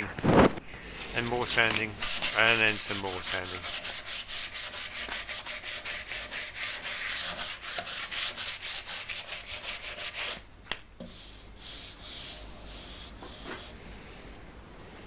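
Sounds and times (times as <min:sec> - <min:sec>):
sandpaper rubbing on wood: 0:02.0 - 0:10.4, 0:11.1 - 0:13.8.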